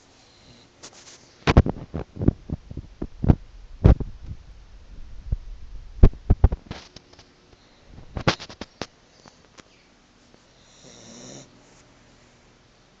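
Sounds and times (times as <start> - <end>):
puppy snoring: 10.6 - 11.6.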